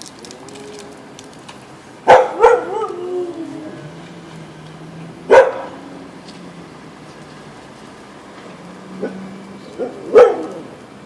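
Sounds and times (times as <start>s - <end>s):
dog barking and yowling: 2.0s - 3.9s, 5.3s - 5.8s, 9.0s - 10.8s.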